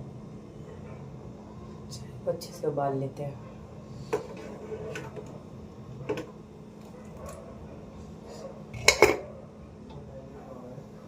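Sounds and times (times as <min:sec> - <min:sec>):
steady low hum: 0:00.0 - 0:11.0
pots and utensils clattering: 0:08.8 - 0:09.3.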